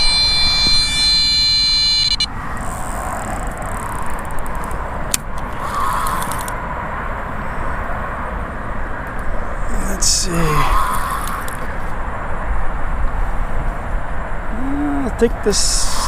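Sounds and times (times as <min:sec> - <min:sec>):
electronic bite alarm tone: 0:00.0 - 0:02.3
outdoor background noise: 0:00.0 - 0:16.0.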